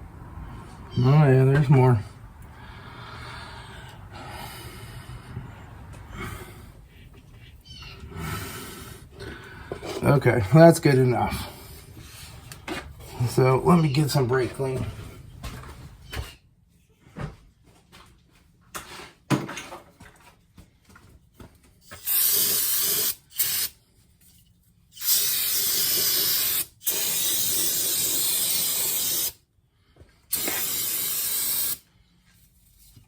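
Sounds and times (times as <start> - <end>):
aerosol spray hissing: 21.9 - 23.7, 25.0 - 29.4, 30.3 - 31.8.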